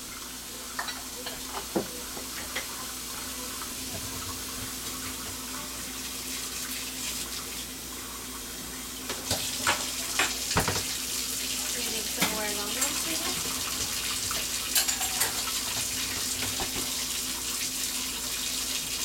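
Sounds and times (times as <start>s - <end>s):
tap water running into sink: 0.0s - 19.0s
dishes clinking: 0.8s - 2.7s, 14.3s - 17.0s.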